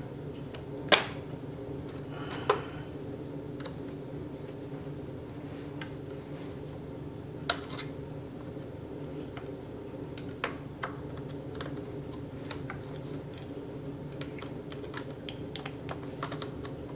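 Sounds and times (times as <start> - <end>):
steady low hum: 0.0 - 16.9
plastic clicks and snaps: 14.1 - 16.8.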